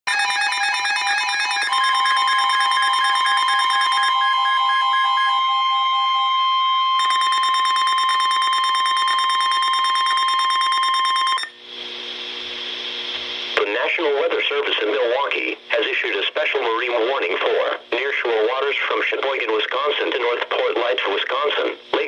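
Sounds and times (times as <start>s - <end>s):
fast-pulsing electronic alarm beeps: 0.1s - 11.6s
steady alert tone: 7.0s - 11.5s.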